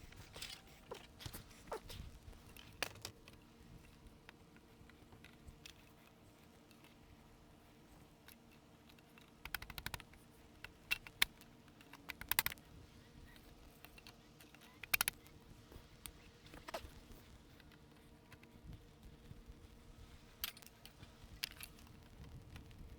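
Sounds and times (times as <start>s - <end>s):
plastic parts clicking and knocking: 2.3s - 5.9s, 8.3s - 12.7s, 13.4s - 18.5s, 20.4s - 22.8s.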